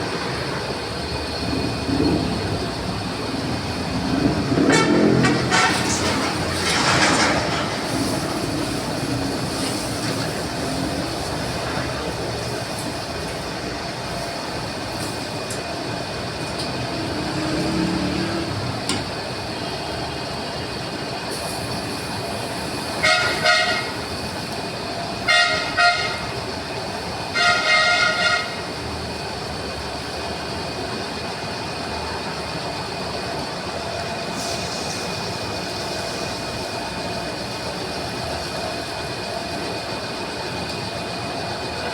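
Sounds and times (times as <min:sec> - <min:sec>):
lathe humming and whining: 0:00.0 - 0:41.9.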